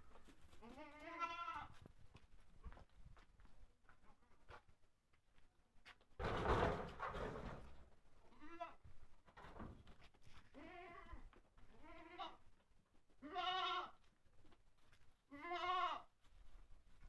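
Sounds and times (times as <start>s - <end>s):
goats bleating: 0.6s - 1.7s, 10.5s - 12.4s, 13.2s - 14.0s, 15.3s - 16.1s.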